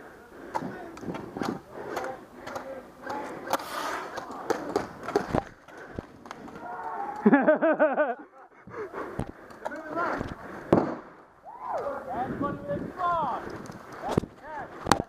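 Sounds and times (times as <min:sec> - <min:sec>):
indistinct voices: 0:00.0 - 0:07.4.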